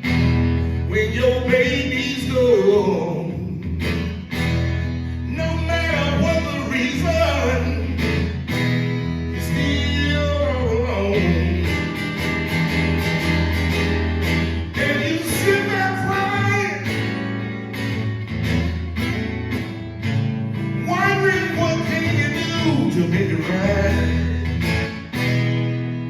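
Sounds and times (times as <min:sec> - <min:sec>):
acoustic guitar blues: 0:00.0 - 0:26.0
man singing: 0:00.8 - 0:03.8, 0:05.2 - 0:08.4, 0:09.2 - 0:12.3, 0:14.7 - 0:17.4, 0:20.6 - 0:24.9.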